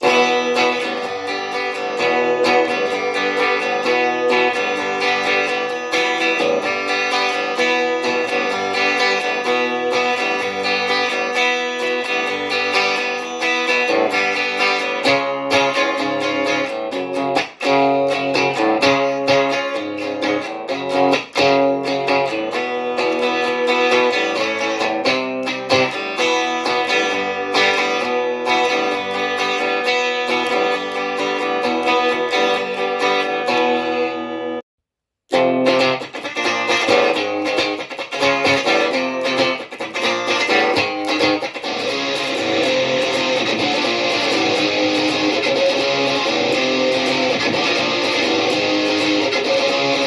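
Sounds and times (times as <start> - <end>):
guitar playing chords: 0.0 - 34.6, 35.3 - 50.0.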